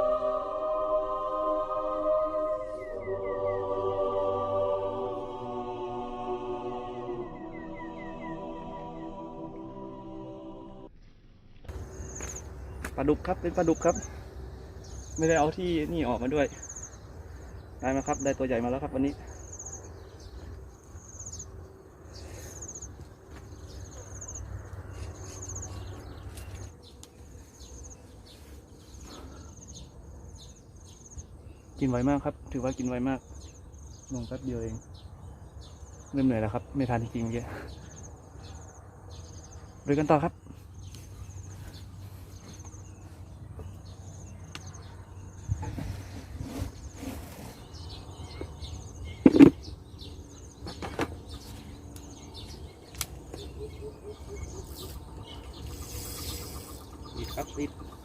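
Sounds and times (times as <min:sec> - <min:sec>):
insects chirping: 0:11.7 - 0:46.3, 0:47.7 - 0:58.0.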